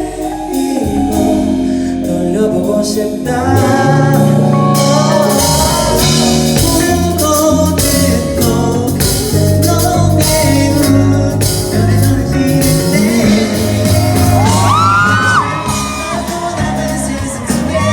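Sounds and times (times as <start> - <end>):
pop band music with drums: 0.0 - 17.9
shouting: 14.0 - 17.9.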